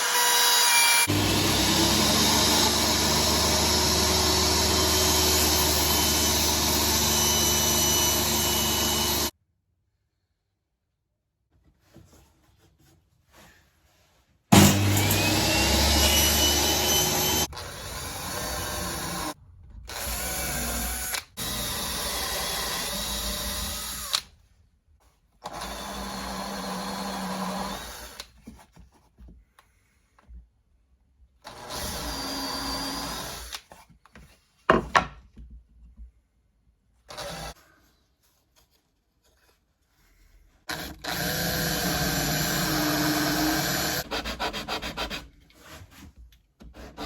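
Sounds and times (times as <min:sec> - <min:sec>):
power tools running: 0:00.0 - 0:09.3, 0:14.5 - 0:19.4, 0:40.7 - 0:44.0.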